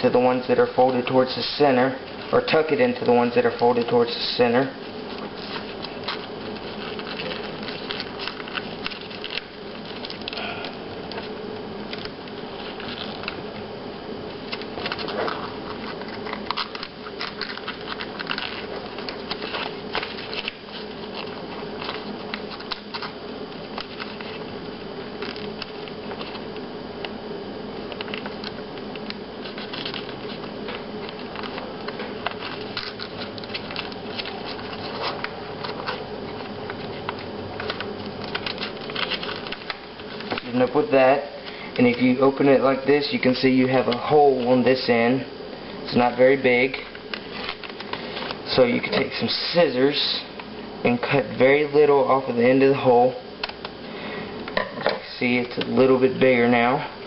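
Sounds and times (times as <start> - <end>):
paper rustling and creasing: 0.0 - 27.2, 27.8 - 54.4
steady hum: 0.0 - 57.0.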